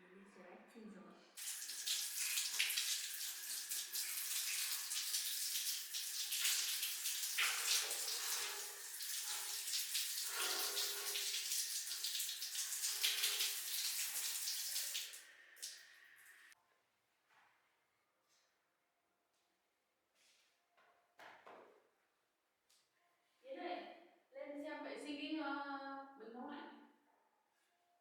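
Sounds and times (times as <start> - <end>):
water running and splashing: 1.4 - 16.6.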